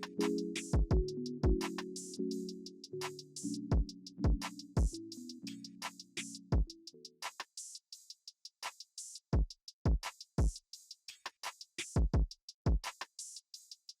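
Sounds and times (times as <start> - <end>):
hi-hat and snare hits: 0.0 - 14.0
deep kick drums: 0.8 - 1.6.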